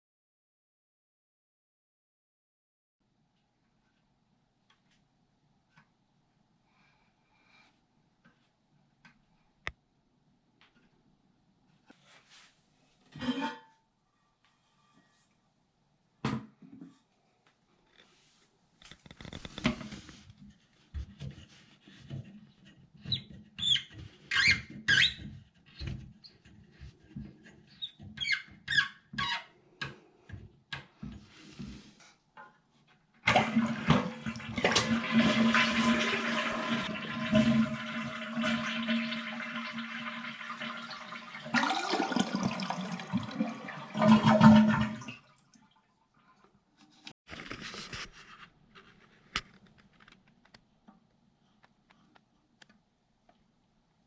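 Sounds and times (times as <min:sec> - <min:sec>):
toilet flushing: 0:33.3 - 0:45.3.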